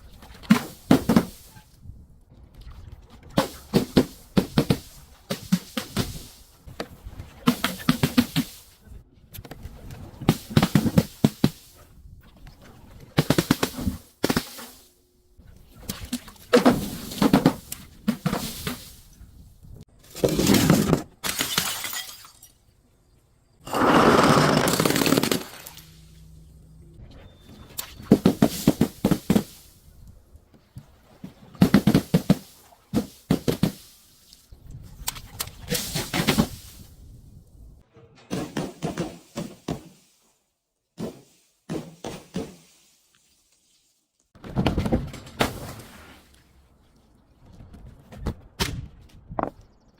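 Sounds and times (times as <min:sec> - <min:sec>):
glass crushing and shattering: 0:20.4 - 0:22.6.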